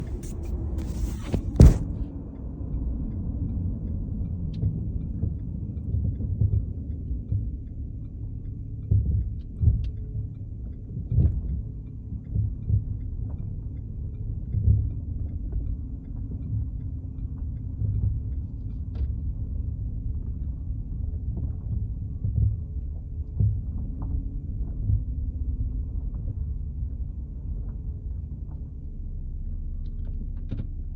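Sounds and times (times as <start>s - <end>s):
irregular thumps: 0.0s - 2.0s
sharp knock: 0.0s - 2.0s
car rumbling slowly: 0.0s - 30.9s.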